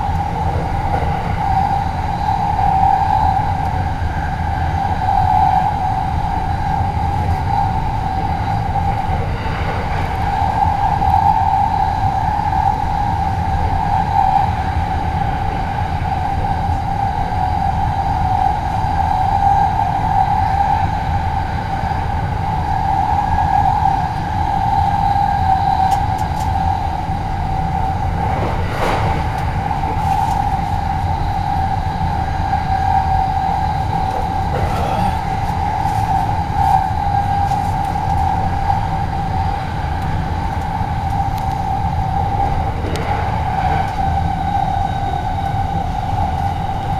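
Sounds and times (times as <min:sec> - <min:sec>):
train rumble inside car: 0:00.0 - 0:46.9
humming whine: 0:24.2 - 0:46.9.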